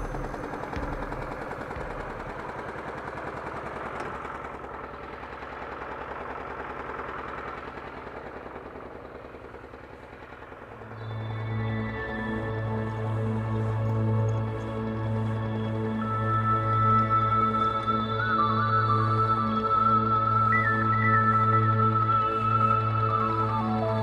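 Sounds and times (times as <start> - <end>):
background music: 0.0 - 4.4, 10.8 - 24.0
engine puttering: 0.0 - 24.0.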